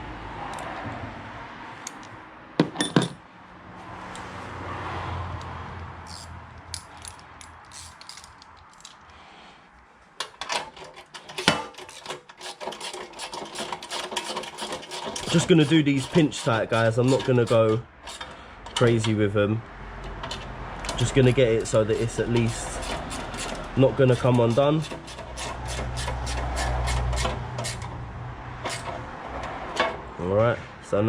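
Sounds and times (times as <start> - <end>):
metal tools clinking on bolts: 2.7 - 3.2, 6.1 - 9.0, 10.2 - 19.2
fast ratchet clicking: 6.1 - 8.4.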